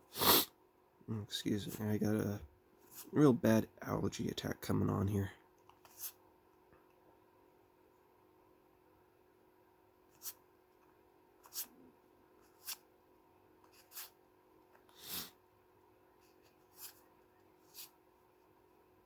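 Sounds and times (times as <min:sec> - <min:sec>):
person sniffing: 0:00.0 - 0:00.5, 0:14.9 - 0:15.4
person sneezing: 0:00.1 - 0:00.5.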